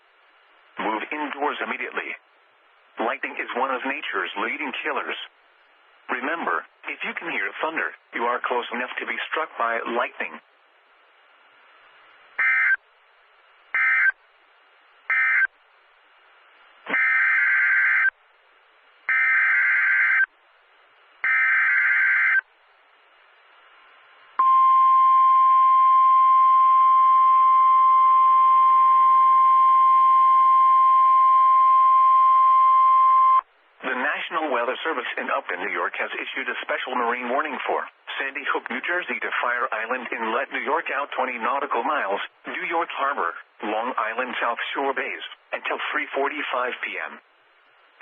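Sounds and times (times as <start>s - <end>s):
steady alarm tone: 12.4s - 12.8s, 13.8s - 14.2s, 15.1s - 15.5s, 16.9s - 18.1s, 19.1s - 20.3s, 21.2s - 22.4s.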